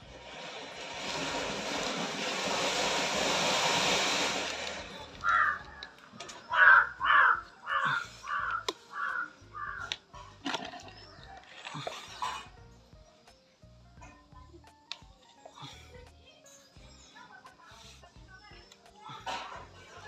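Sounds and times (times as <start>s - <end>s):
steady hiss: 0.0s - 6.5s
bird calling harshly: 5.2s - 9.9s.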